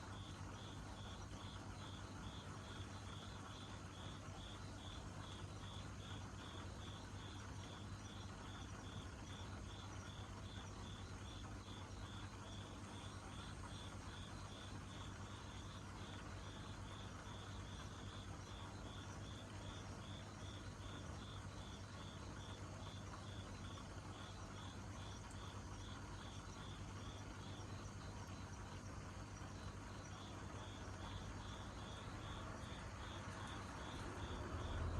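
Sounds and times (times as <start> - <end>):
low steady hum: 0.0 - 34.9
insect chirping: 0.1 - 34.9.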